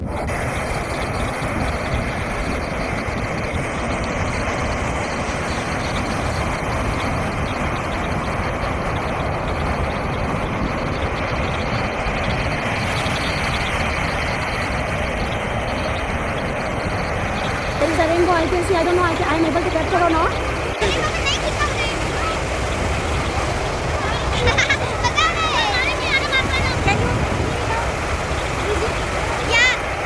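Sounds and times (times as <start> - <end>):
waterfall rushing: 17.7 - 30.0.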